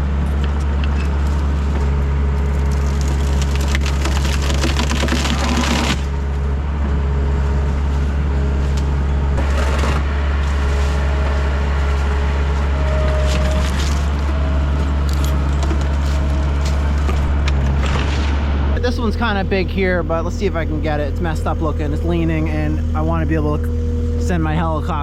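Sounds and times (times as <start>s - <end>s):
wood crackling and snapping: 0.0s - 6.4s, 7.8s - 18.8s
diesel engine running under load: 0.0s - 25.0s.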